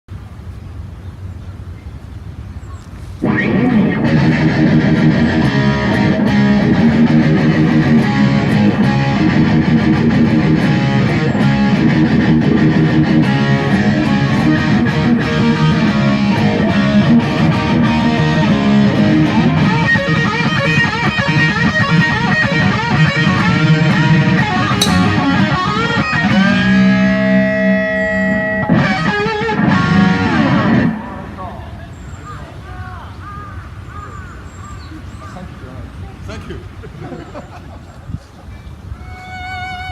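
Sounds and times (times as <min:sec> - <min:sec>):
electric guitar riffing: 0:03.2 - 0:31.6.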